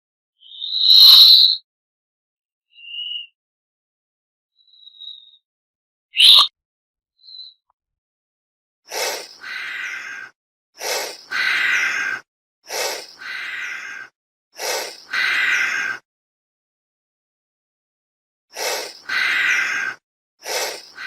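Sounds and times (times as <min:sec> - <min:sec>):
chameleon hissing: 0:08.9 - 0:16.0, 0:18.5 - 0:21.0.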